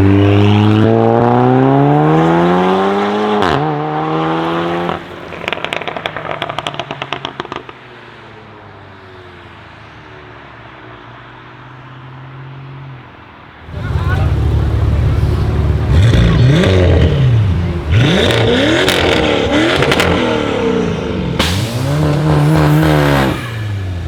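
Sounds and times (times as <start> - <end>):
car engine accelerating hard: 13.6 - 24.0
exhaust crackling and popping: 13.7 - 24.0.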